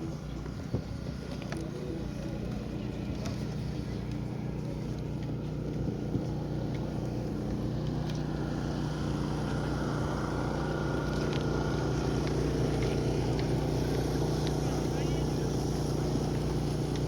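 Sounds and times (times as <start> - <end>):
wind noise: 0.0 - 1.5
engine droning: 0.0 - 17.0.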